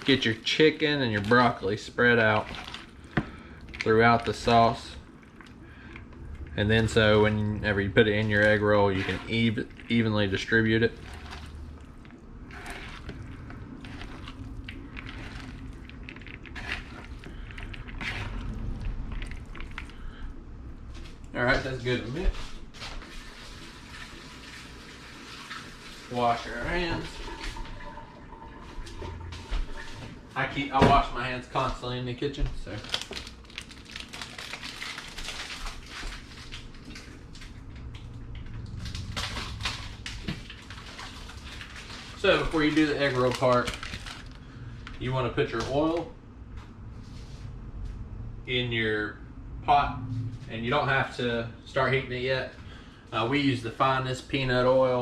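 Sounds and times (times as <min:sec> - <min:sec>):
wet squishing and scraping in bowl: 0:00.0 - 0:48.2
low steady hum: 0:00.0 - 0:55.0.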